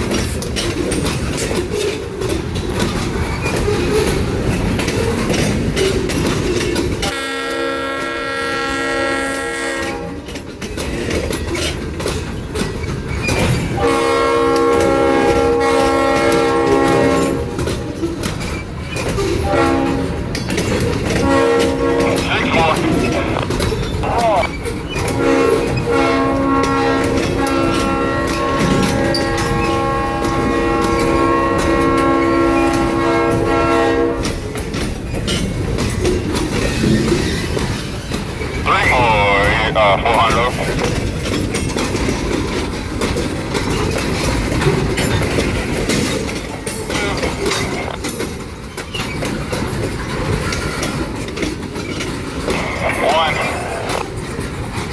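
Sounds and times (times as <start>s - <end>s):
train wheels clattering over rail joints: 0.0s - 7.2s, 9.8s - 22.2s, 22.8s - 38.6s, 40.7s - 52.8s, 53.9s - 54.9s
train air horn blasts: 7.1s - 10.2s, 13.8s - 17.7s, 19.4s - 20.2s, 21.1s - 23.2s, 25.0s - 34.5s.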